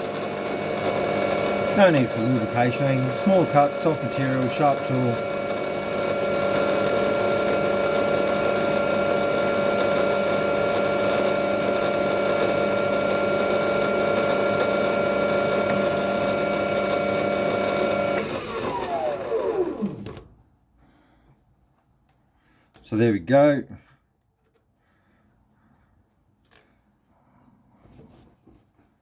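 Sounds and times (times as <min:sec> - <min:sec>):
metal lathe motor whine: 0:00.0 - 0:20.1
lathe spinning down: 0:00.0 - 0:20.2.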